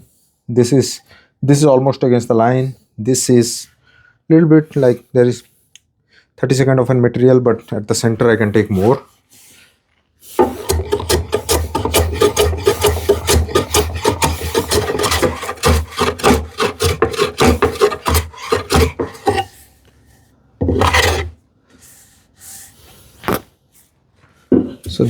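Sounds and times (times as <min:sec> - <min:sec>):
hand plane shaving wood: 0:10.3 - 0:19.6, 0:20.6 - 0:21.4.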